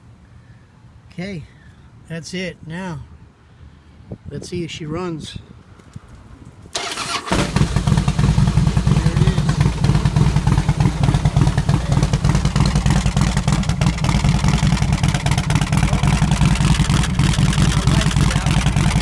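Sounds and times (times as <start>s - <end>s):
motorcycle engine running: 7.3s - 19.0s.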